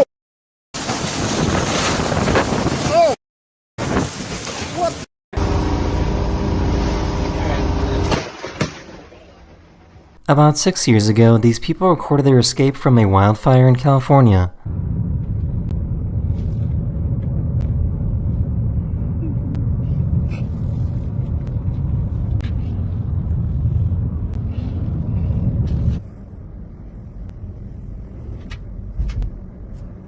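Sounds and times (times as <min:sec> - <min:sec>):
car engine and road noise: 0:05.4 - 0:08.2, 0:14.6 - 0:30.0.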